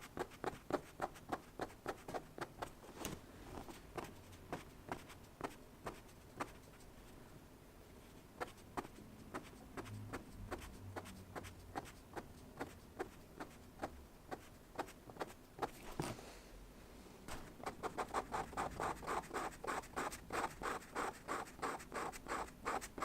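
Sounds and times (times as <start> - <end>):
pen scratching on paper: 0.0 - 2.7, 8.4 - 15.8, 17.6 - 23.0.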